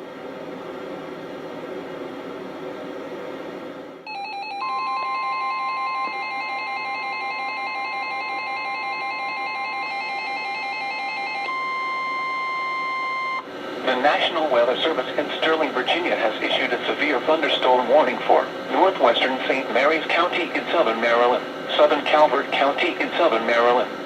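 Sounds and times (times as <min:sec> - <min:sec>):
steady warning alarm tone: 0:04.1 - 0:17.7
faint radio noise: 0:13.8 - 0:24.0.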